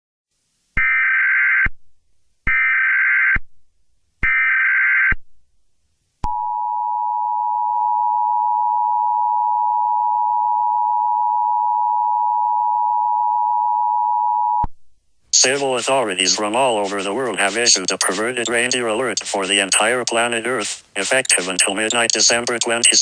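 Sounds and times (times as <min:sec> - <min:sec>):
digital data bursts: 0:15.4 - 0:23.0.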